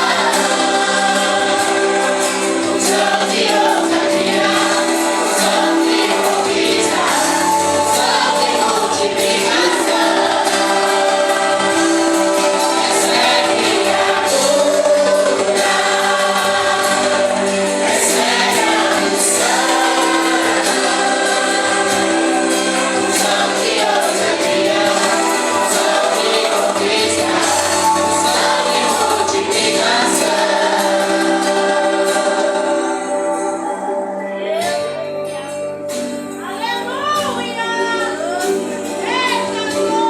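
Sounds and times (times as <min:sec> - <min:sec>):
vocal group singing gospel: 0:00.0 - 0:35.5, 0:36.5 - 0:40.0
instrumental backing: 0:00.0 - 0:40.0.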